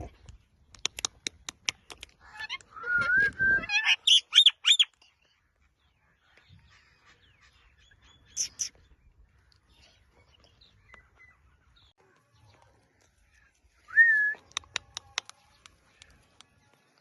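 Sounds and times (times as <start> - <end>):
parakeet sharp clicks: 0.7 - 2.7, 14.4 - 16.5.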